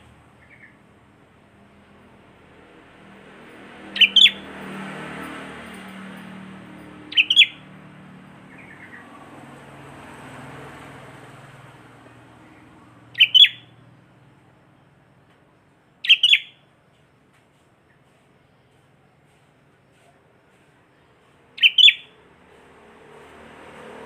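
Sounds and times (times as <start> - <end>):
bird singing short sharp phrases: 4.0 - 4.4, 7.1 - 7.6, 13.1 - 13.7, 16.0 - 16.6, 21.6 - 22.2.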